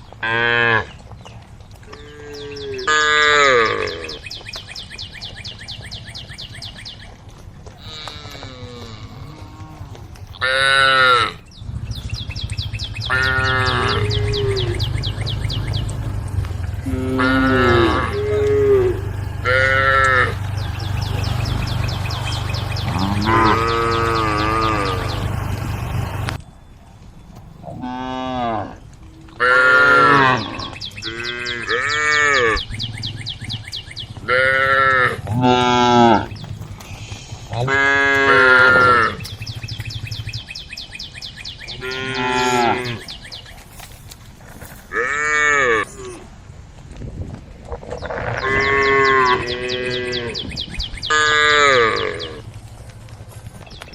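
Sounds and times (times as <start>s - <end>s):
cattle mooing: 1.9s - 4.2s, 7.8s - 11.4s, 13.0s - 26.4s, 29.4s - 32.7s, 34.2s - 39.5s, 41.7s - 43.1s, 44.9s - 46.2s, 48.0s - 50.5s, 51.1s - 52.5s
steady low hum: 11.5s - 26.5s.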